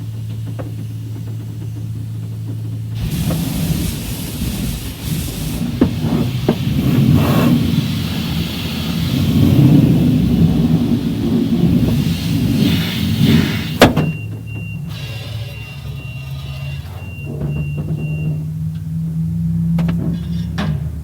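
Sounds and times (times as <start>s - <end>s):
rumble: 0.0s - 21.0s
steady low hum: 0.0s - 21.0s
water spray hissing: 3.0s - 14.0s, 14.9s - 16.8s.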